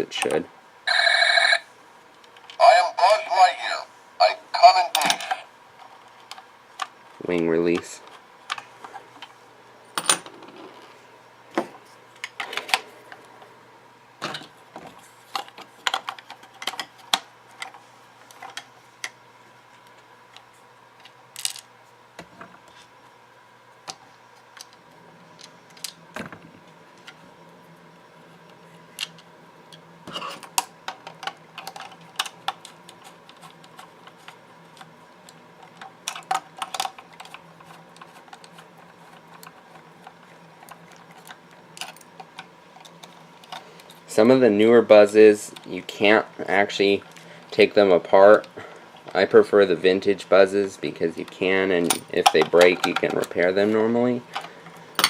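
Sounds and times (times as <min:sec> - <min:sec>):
faint steady hum: 0:00.0 - 0:55.0
plastic parts clicking and rattling: 0:30.5 - 0:34.9, 0:35.6 - 0:43.9, 0:51.8 - 0:53.4.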